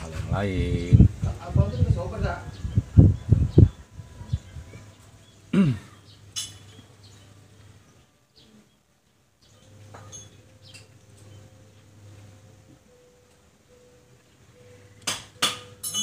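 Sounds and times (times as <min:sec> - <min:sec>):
light metallic clinks: 0:09.6 - 0:11.4, 0:15.4 - 0:16.0.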